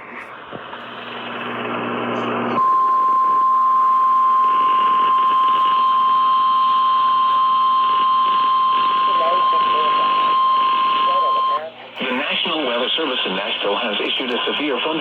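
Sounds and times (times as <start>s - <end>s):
radio hiss: 7.9s - 15.0s.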